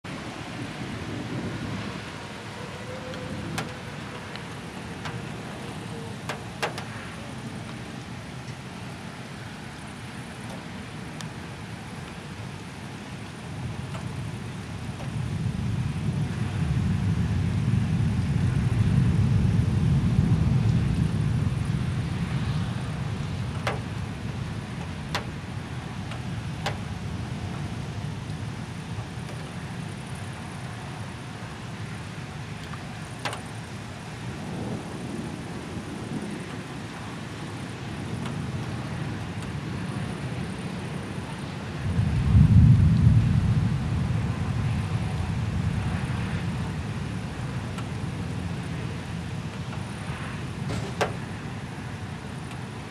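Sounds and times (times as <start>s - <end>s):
rolling thunder rumble: 0.1s - 52.6s
thunder crack: 41.8s - 46.8s.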